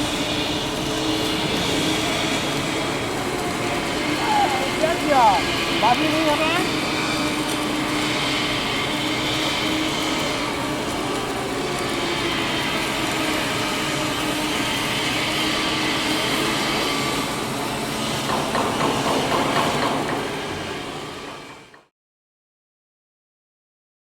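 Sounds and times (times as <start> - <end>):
rapid crackling rattle: 0.0 - 14.1
arc welding machinery running: 0.0 - 21.9.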